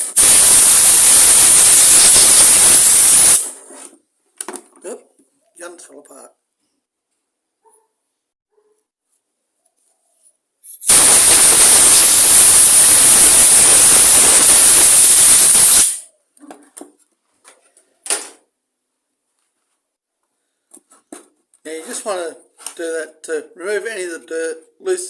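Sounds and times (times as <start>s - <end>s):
air blow gun hissing: 0.0s - 3.6s, 10.8s - 16.0s.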